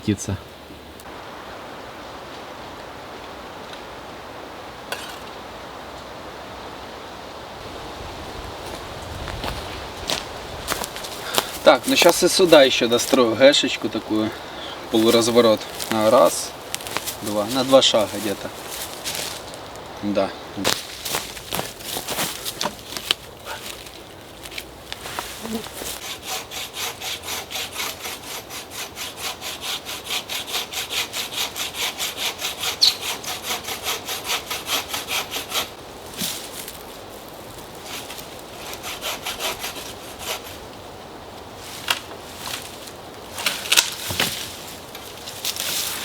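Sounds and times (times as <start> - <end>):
wood handling: 8.6 - 19.8, 20.6 - 26.1, 41.5 - 46.0
bow saw cutting wood: 10.1 - 19.4, 25.4 - 36.4, 37.8 - 40.7, 41.7 - 44.7.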